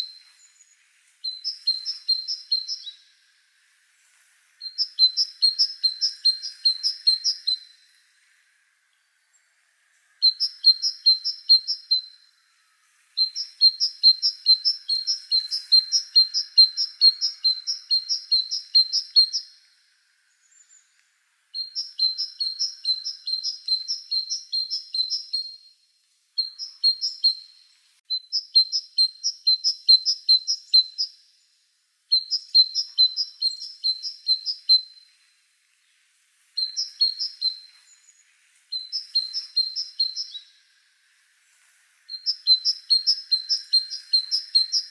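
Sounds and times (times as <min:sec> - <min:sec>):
songbird chirping: 0:00.0 - 0:44.9.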